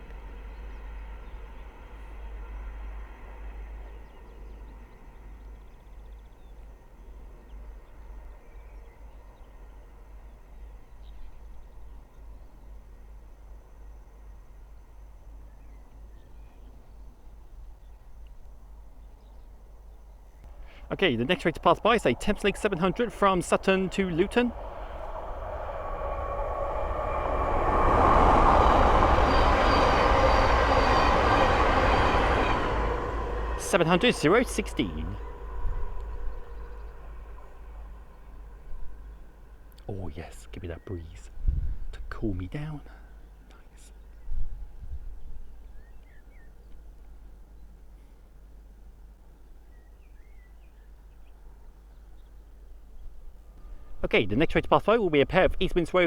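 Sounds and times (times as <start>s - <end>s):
train passing at speed: 0.0s - 43.4s, 52.4s - 56.0s
birds chirping: 14.8s - 44.4s
faint high whine: 20.5s - 39.2s
low rumble: 20.5s - 39.2s
electric train humming: 20.5s - 41.1s.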